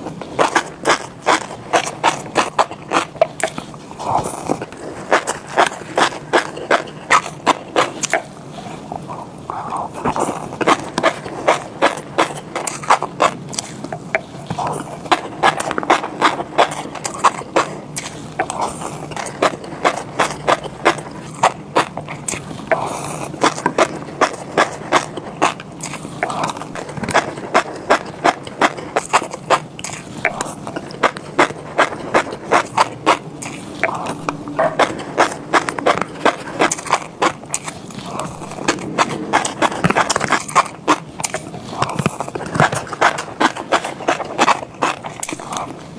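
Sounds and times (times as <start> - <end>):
wet chewing: 0.0 - 45.9.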